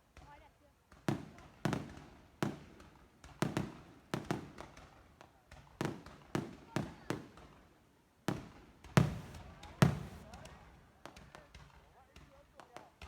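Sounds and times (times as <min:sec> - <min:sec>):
fireworks booming: 0:09.0 - 0:10.4.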